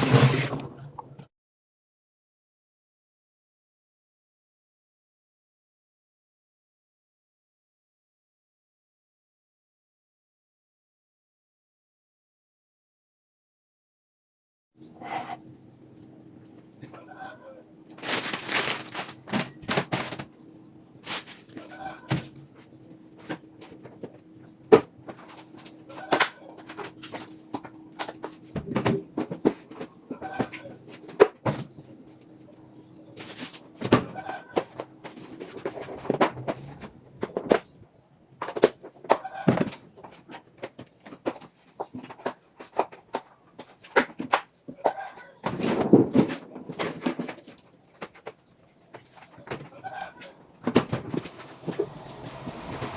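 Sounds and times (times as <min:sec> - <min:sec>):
chickens clucking: 0:16.8 - 0:17.6, 0:21.5 - 0:22.2, 0:29.8 - 0:30.8, 0:49.1 - 0:51.5.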